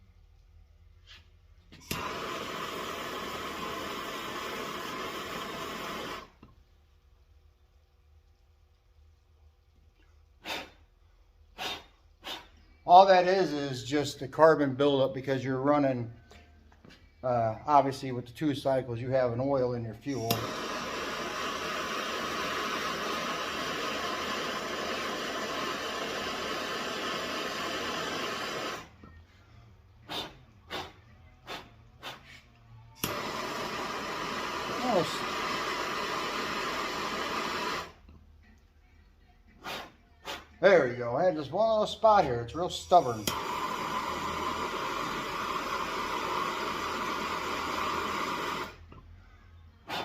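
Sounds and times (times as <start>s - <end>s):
gas torch hissing: 1.1s - 6.6s, 10.4s - 10.9s, 11.5s - 15.7s, 17.4s - 29.0s, 30.0s - 38.2s, 39.6s - 49.0s
torch igniting click: 1.8s - 6.6s, 20.1s - 28.9s, 33.0s - 38.2s, 42.2s - 49.0s.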